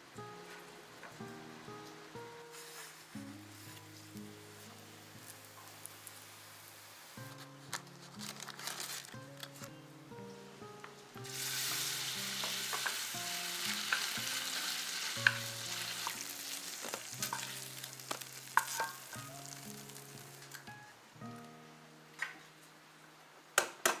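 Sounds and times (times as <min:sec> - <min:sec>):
food sizzling in hot oil: 0:01.7 - 0:09.2, 0:11.2 - 0:20.9
utensil clicking in pan: 0:11.4 - 0:20.7.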